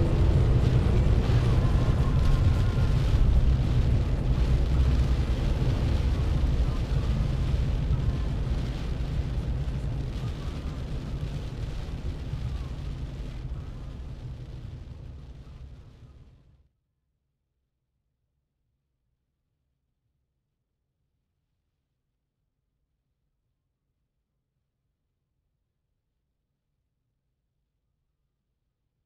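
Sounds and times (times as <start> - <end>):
heavy rain: 0.0 - 16.3.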